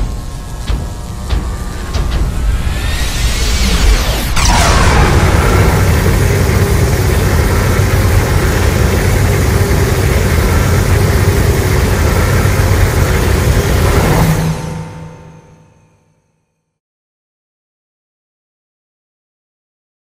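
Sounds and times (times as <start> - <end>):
loud rumbling roar: 1.4 - 15.2.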